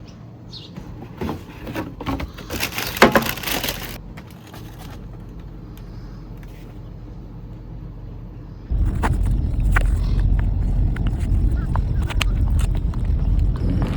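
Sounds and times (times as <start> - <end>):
rustling and clicking: 1.2 - 6.8
steady low hum: 3.4 - 13.9.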